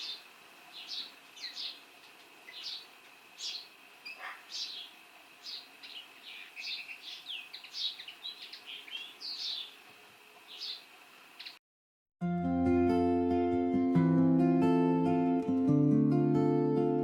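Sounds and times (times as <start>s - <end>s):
bird twittering song: 0.0s - 9.8s, 10.4s - 11.6s.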